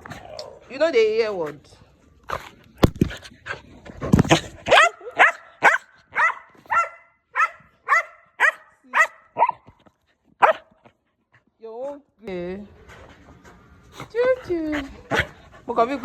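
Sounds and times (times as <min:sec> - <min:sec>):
dog barking: 0:04.7 - 0:09.6, 0:10.4 - 0:10.7.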